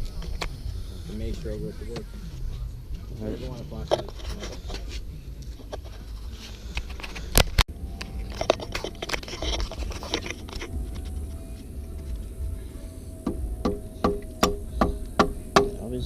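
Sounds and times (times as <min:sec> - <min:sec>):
hand tools clicking and scraping: 0:03.8 - 0:15.9
sharp knocks: 0:13.2 - 0:15.9.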